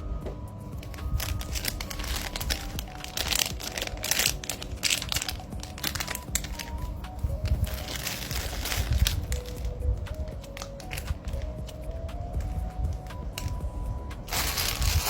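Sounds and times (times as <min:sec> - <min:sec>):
faint music: 0:00.0 - 0:15.0
plastic packaging crinkling: 0:00.8 - 0:11.8, 0:14.2 - 0:15.0.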